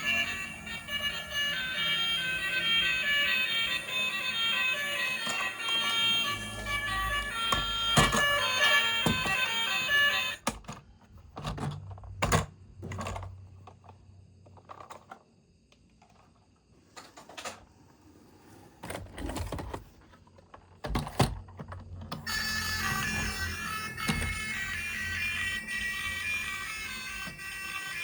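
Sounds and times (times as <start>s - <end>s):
music: 0.0s - 10.4s, 22.2s - 28.0s
plastic toys and packaging handled: 0.0s - 15.3s, 18.8s - 23.4s.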